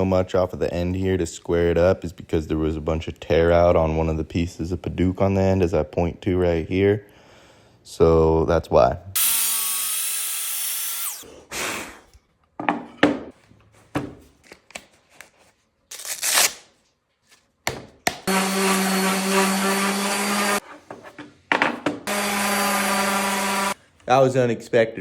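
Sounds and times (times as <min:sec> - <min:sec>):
electric saw running: 0:09.2 - 0:11.2, 0:18.3 - 0:20.6, 0:22.1 - 0:23.8
saw motor winding down: 0:09.2 - 0:11.2, 0:22.1 - 0:23.8
wood knocking and clattering: 0:20.9 - 0:22.1.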